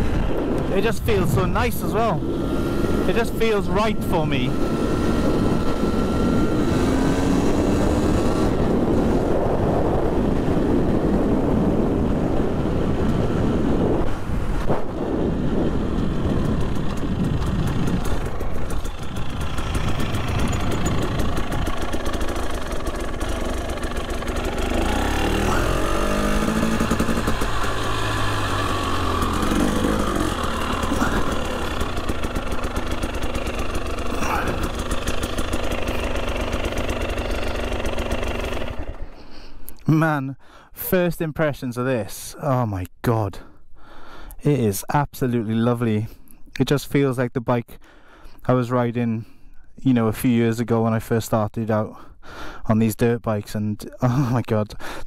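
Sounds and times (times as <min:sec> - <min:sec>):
dirt bike engine revving: 0:00.0 - 0:14.3, 0:14.9 - 0:39.2
wind noise: 0:00.0 - 0:22.1.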